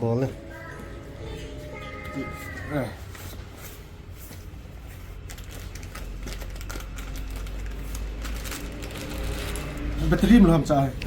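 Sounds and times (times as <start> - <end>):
packaging rustling: 3.0 - 10.4.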